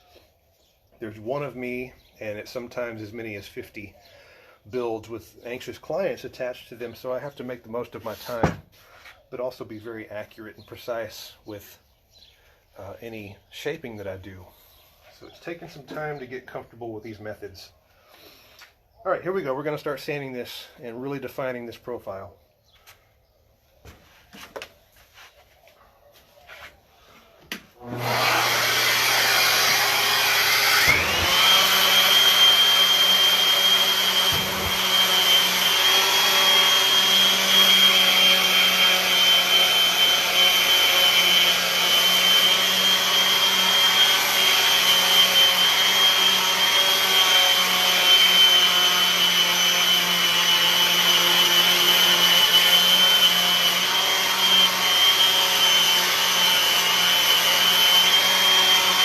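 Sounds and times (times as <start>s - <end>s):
orbital sander whining on wood: 27.8s - 59.0s.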